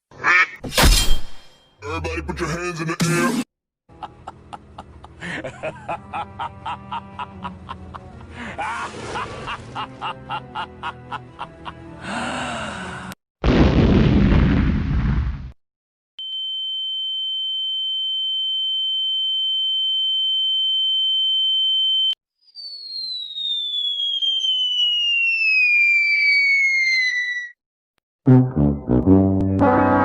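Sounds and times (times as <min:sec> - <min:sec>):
high electronic tone: 0:22.4 - 0:27.5
falling whistle: 0:22.4 - 0:27.6.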